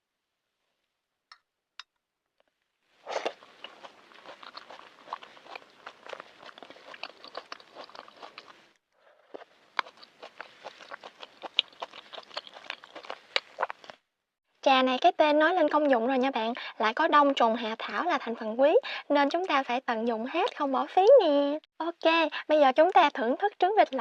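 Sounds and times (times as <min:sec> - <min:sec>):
close chewing with mouth clicks: 0:03.0 - 0:14.0.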